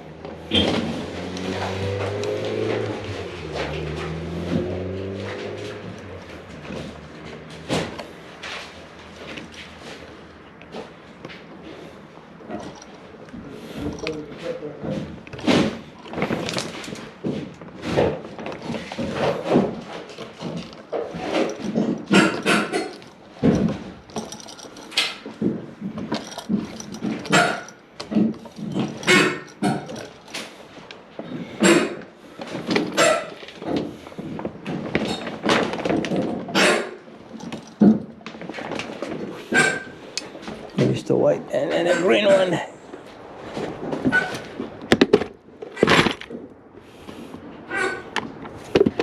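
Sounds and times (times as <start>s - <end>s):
dog barking: 33.0s - 33.4s, 36.6s - 36.9s, 39.5s - 39.9s, 47.7s - 48.1s.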